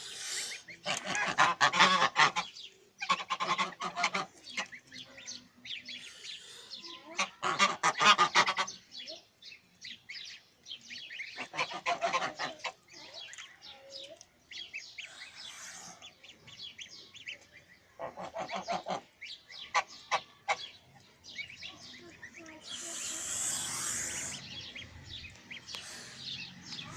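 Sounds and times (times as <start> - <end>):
goslings peeping: 0.0 - 26.9
geese honking: 0.4 - 4.9, 7.2 - 8.8, 11.1 - 12.9, 18.0 - 21.5, 22.1 - 26.9.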